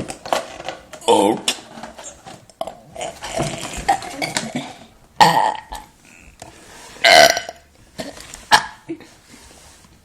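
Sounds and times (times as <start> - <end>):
loud burps: 3.0 - 6.4, 7.0 - 8.1.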